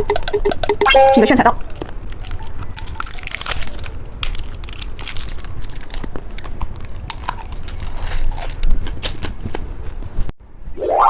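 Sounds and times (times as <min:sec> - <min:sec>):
plastic packaging crinkling: 0:01.6 - 0:09.4.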